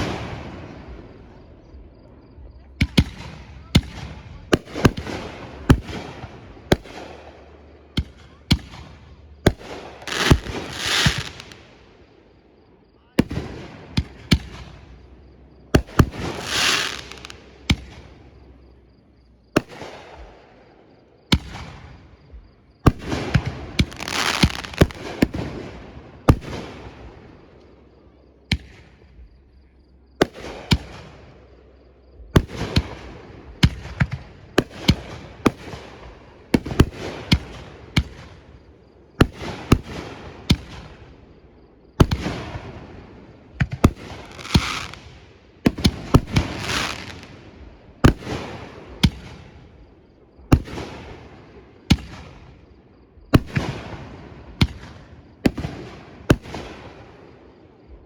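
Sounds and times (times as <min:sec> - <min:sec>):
fireworks bangs: 0:00.0 - 0:12.0, 0:13.2 - 0:18.6, 0:21.3 - 0:27.2, 0:42.0 - 0:49.6
crackling hiss of fireworks: 0:00.0 - 0:58.0.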